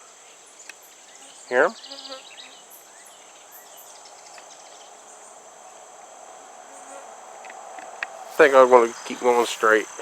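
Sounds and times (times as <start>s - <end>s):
high-pitched insect trill: 0.4s - 10.0s.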